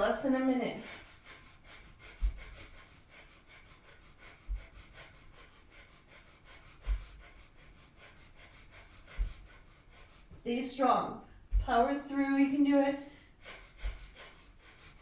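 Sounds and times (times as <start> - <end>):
dull low thump: 2.2 - 2.4, 11.5 - 11.9.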